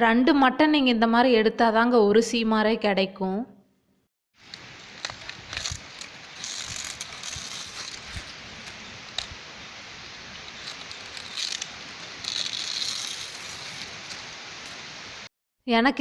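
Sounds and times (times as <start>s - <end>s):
steady hiss: 4.4s - 15.3s
dry leaves ripping and rustling: 4.5s - 15.0s.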